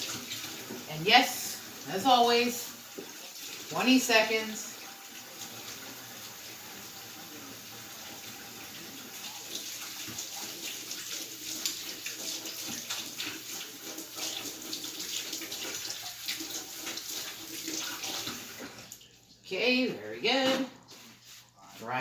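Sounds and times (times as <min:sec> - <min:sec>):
hands washing splashing: 0:09.2 - 0:19.3.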